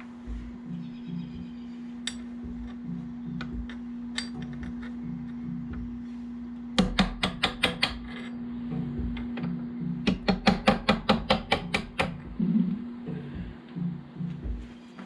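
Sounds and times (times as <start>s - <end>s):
hammer tapping metal punch: 2.0s - 6.0s, 6.8s - 12.4s.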